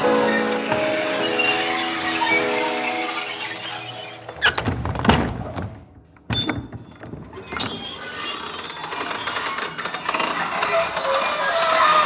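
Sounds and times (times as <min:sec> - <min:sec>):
background music: 0:00.0 - 0:06.3
wooden door clicks and knocks: 0:04.3 - 0:08.0.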